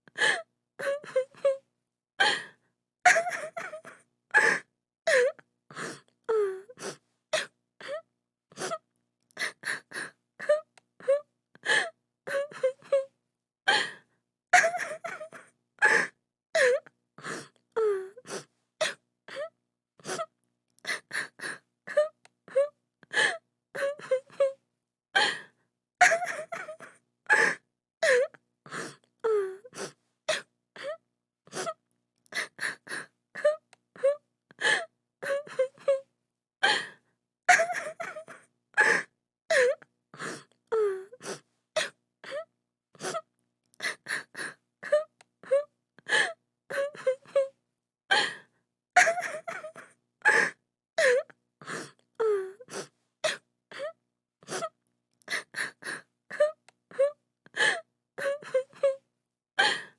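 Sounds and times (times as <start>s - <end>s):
woman crying and sobbing: 3.1s - 5.3s, 14.6s - 16.8s, 26.0s - 28.3s, 37.5s - 39.8s, 49.0s - 51.2s.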